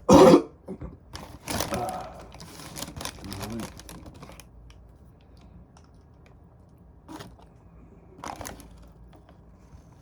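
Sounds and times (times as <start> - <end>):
food wrapper crunching: 1.3 - 4.5.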